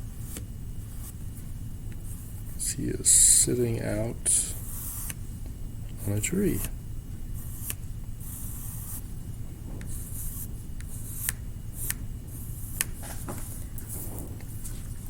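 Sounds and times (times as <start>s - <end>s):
pencil scratching on paper: 0.0s - 1.4s, 4.0s - 5.2s, 6.0s - 9.1s, 9.8s - 15.0s.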